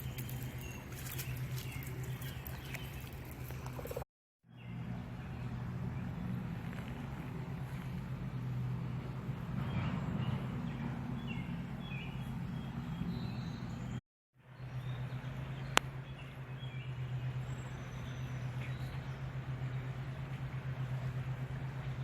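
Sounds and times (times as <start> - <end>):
steady low hum: 4.6 - 22.0.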